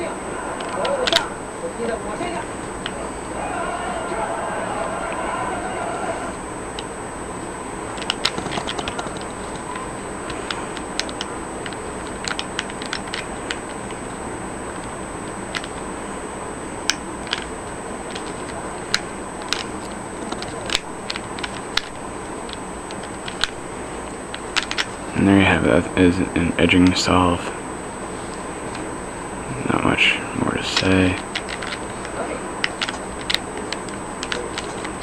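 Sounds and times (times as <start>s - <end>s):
puzzle cube plastic clicks: 10.3s - 14.0s, 15.5s - 15.8s, 24.3s - 24.9s, 30.8s - 35.0s.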